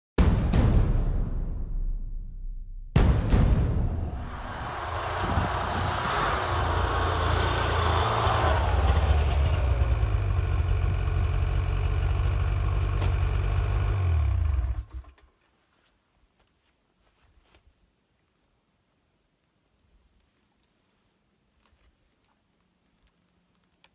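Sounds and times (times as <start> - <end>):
snowmobile engine droning: 4.1 - 15.1.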